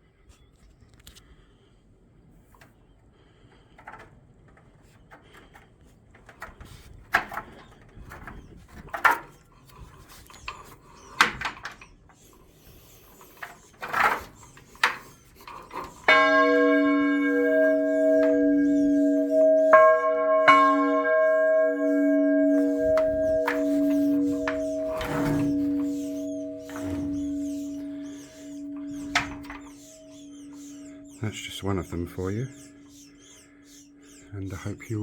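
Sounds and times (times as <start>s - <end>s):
knocks and scrapes: 3.8s - 19.2s, 21.5s - 30.0s
church bell ringing: 14.8s - 35.0s.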